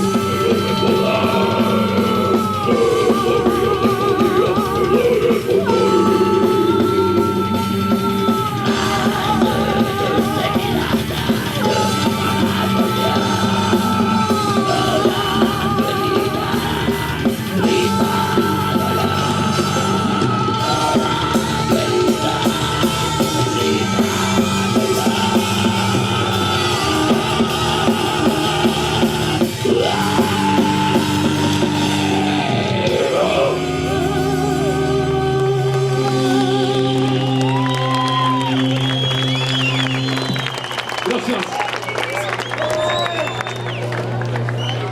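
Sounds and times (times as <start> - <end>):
drum kit: 0.0 - 40.9
electric guitars: 0.0 - 41.1
bass: 0.0 - 44.9.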